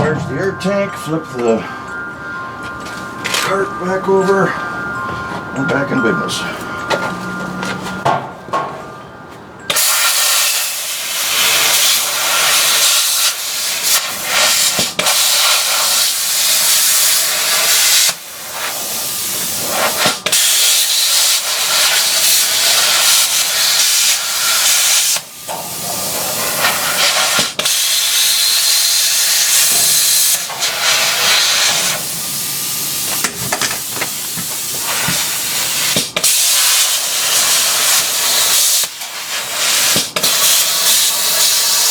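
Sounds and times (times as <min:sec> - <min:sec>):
pneumatic cut-off tool on metal: 0:09.7 - 0:41.9.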